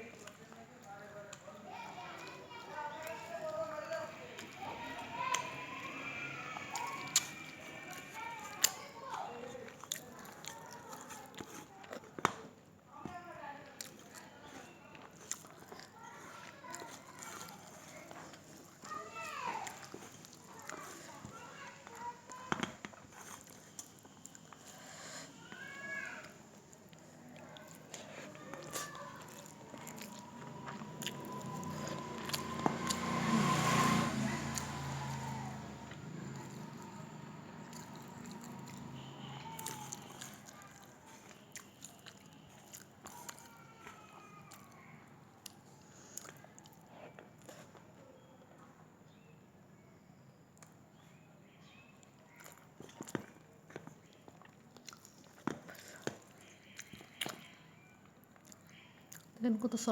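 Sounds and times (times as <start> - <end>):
person chewing: 2.9 - 12.2, 13.8 - 25.4, 26.2 - 44.7, 45.4 - 47.8, 52.3 - 57.5, 58.1 - 59.4.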